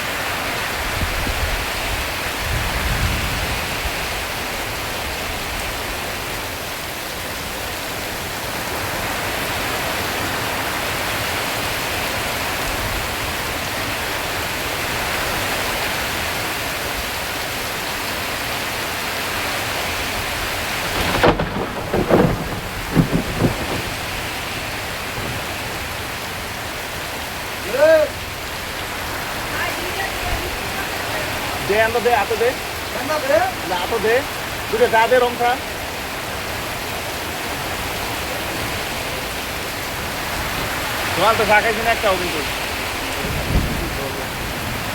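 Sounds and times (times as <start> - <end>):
heavy rain on a tin roof: 0.0 - 44.9
low rumble of thunder: 0.9 - 4.4, 20.2 - 26.7, 42.6 - 44.9.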